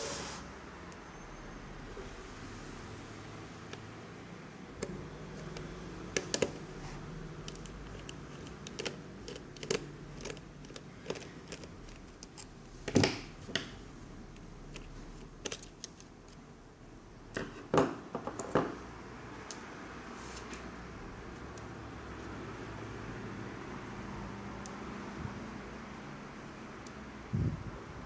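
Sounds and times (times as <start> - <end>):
small plastic and metal parts clicking: 7.4 - 13.2, 14.3 - 16.4.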